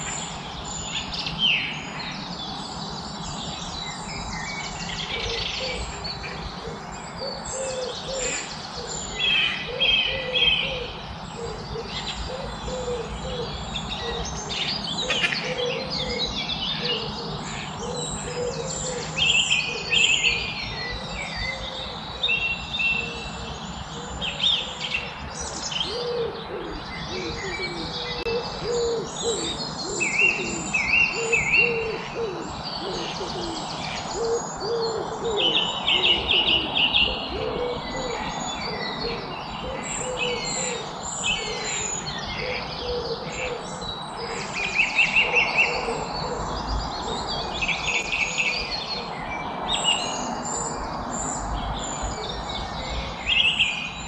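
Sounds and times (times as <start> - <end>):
wild birds singing and chirping: 0.0 - 54.0.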